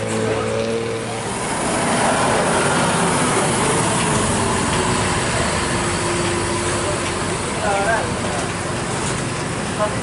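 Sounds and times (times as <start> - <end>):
bus passing on road: 0.0 - 10.0.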